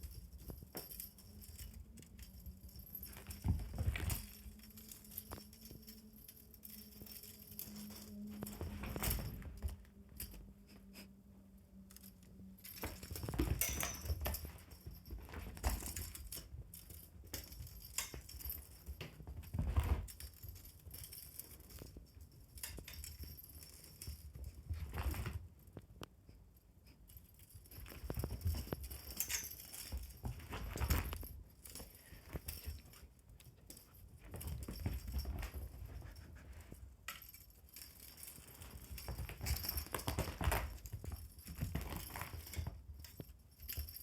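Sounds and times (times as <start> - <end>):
light jingling and clicking: 0.0 - 44.0
thumps and scuffles on floor: 19.0 - 20.2.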